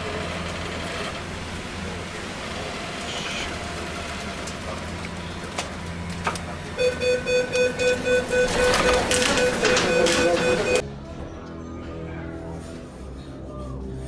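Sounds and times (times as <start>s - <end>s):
pulsing beeping tone: 6.8s - 10.8s.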